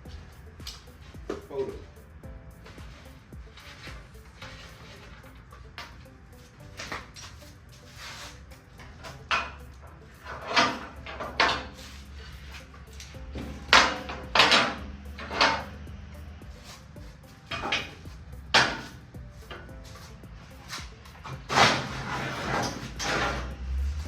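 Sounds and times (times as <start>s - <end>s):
metallic clanks of hand tools: 8.8s - 15.8s, 17.4s - 23.6s.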